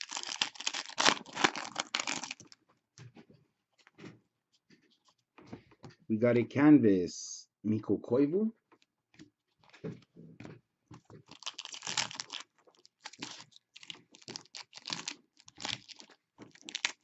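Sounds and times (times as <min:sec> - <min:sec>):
trading cards rustling and clicking: 0:00.0 - 0:02.6, 0:11.2 - 0:17.0.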